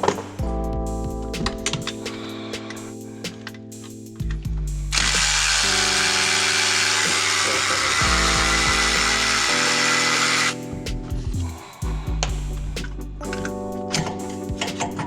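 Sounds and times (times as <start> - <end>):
background music sustained notes: 0.0 - 15.0
high-pitched whir: 5.0 - 10.6.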